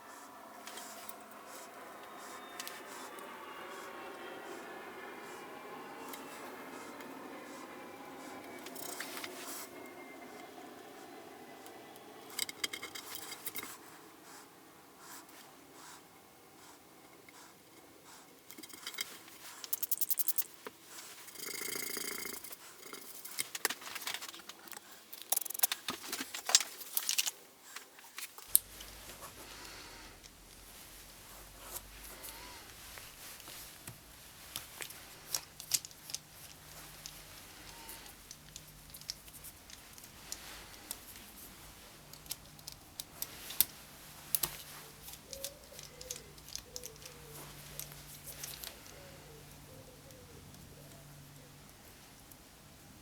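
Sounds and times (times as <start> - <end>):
faint low hum: 0.0 - 25.0, 28.3 - 53.0
tools clicking and scraping: 8.3 - 14.0, 18.4 - 49.4.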